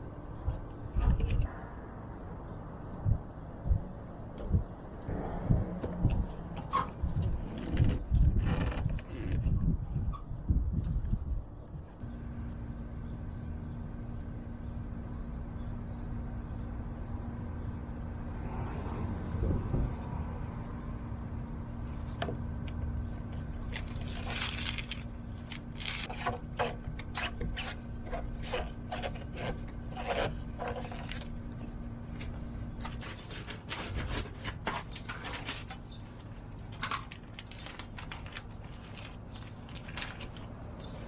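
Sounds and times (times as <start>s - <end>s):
low hum: 0.0s - 39.4s.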